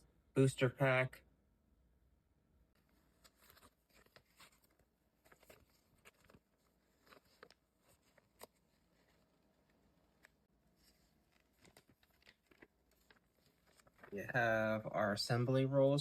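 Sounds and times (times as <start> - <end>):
faint packaging rustling: 2.7 - 14.2.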